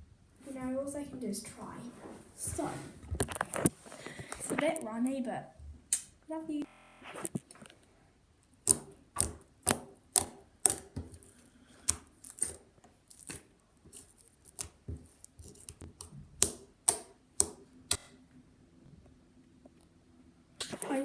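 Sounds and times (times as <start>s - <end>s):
slime squished by hand: 8.6s - 18.0s.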